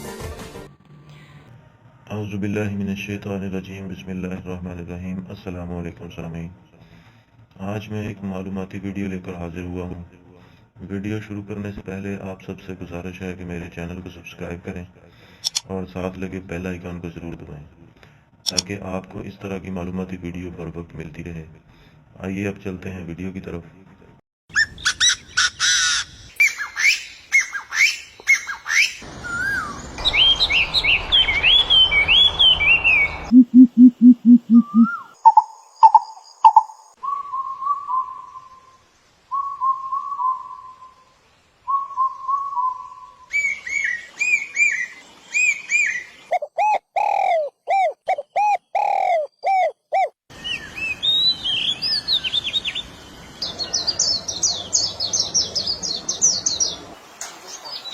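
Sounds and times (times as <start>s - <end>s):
birds singing and calling: 24.5s - 33.3s, 34.5s - 37.0s, 41.8s - 57.9s.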